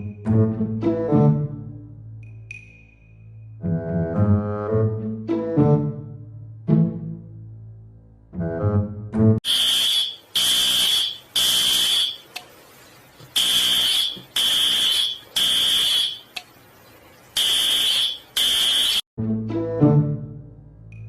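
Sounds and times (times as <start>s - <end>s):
smoke alarm beeping: 9.4s - 12.4s, 13.4s - 16.5s, 17.4s - 19.0s.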